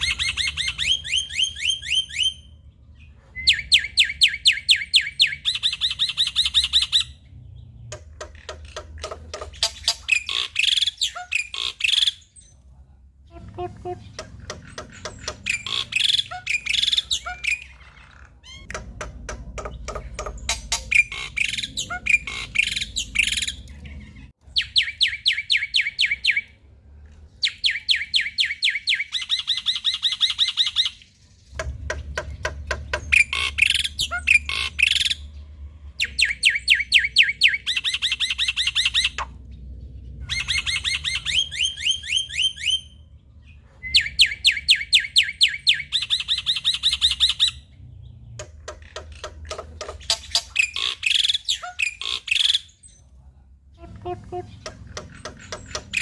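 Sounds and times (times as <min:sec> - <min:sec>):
harsh bird chattering: 0:00.0 - 0:02.4, 0:07.9 - 0:12.4, 0:13.4 - 0:26.3, 0:27.7 - 0:35.3, 0:48.4 - 0:53.0, 0:53.8 - 0:56.0.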